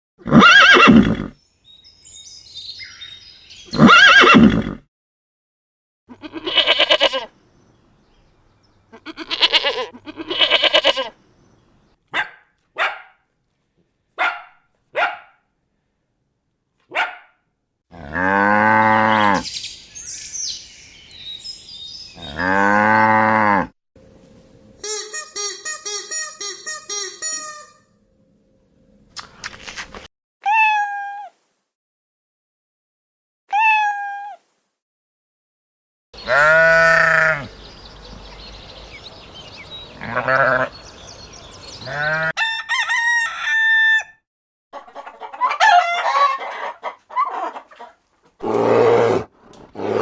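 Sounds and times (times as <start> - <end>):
farm animal calls: 3.0 - 4.6, 6.1 - 7.3, 8.9 - 11.2, 18.0 - 19.5, 22.1 - 23.7, 36.2 - 43.7, 44.8 - 50.0
clucking calls: 44.8 - 49.2.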